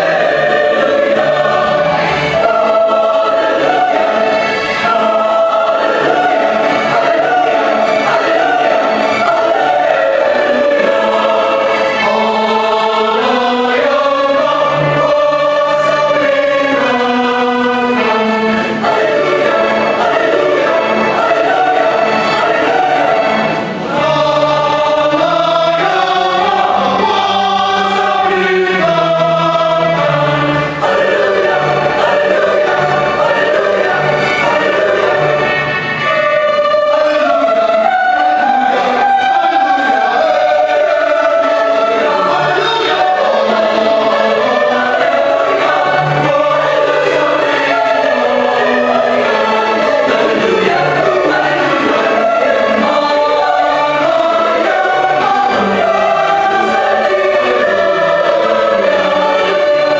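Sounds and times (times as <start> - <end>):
choir singing in harmony: 0.0 - 59.9.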